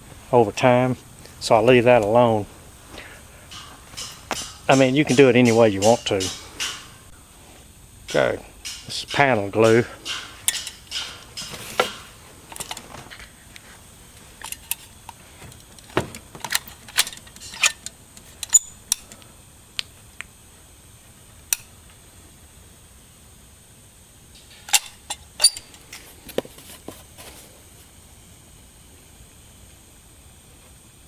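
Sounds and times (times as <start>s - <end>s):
faint high whine: 0.0s - 31.0s.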